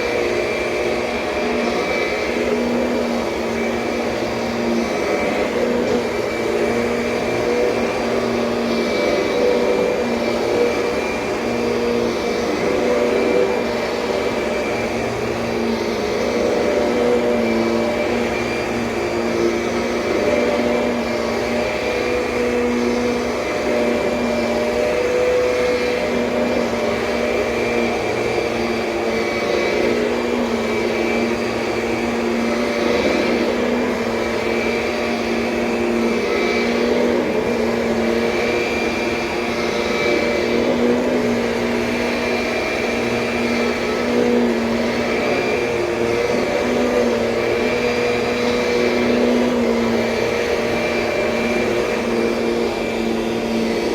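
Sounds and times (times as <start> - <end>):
vacuum cleaner running: 0.0 - 53.9.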